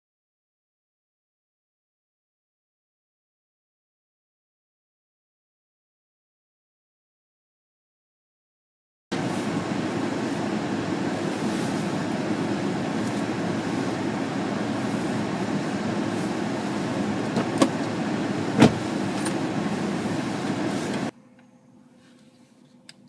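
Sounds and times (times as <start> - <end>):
road and tyre noise in car: 9.1 - 21.1.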